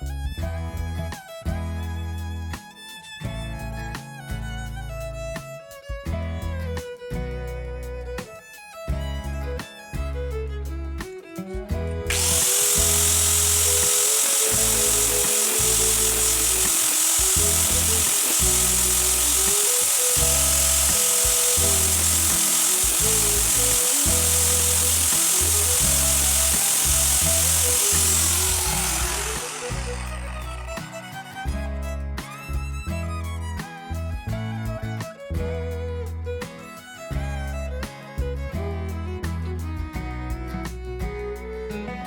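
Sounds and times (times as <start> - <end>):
loud hiss: 12.1 - 31.5
power tool whining: 12.1 - 31.7.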